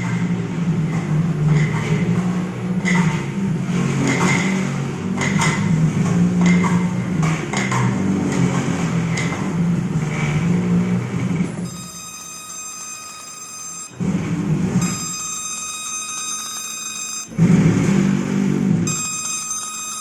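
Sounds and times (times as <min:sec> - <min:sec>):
laser marking machine hum: 0:09.8 - 0:20.0.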